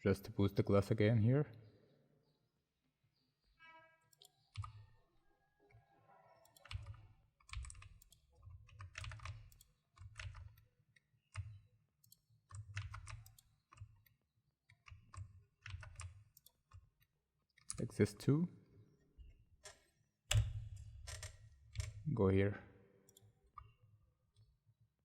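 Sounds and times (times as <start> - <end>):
keyboard and mouse clicks: 4.1 - 4.9, 6.4 - 17.9, 19.6 - 22.1.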